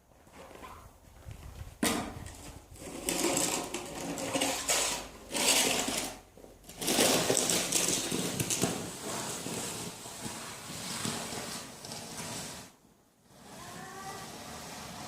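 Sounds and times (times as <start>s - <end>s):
snow shovel scraping snow: 6.7s - 15.0s.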